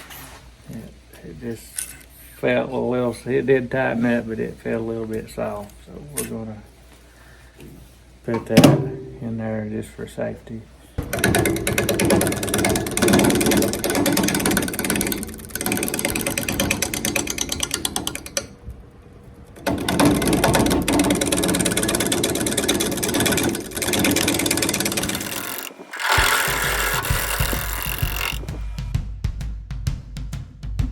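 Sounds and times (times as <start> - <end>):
lathe gouge chattering on wood: 11.0 - 18.6, 19.6 - 28.5.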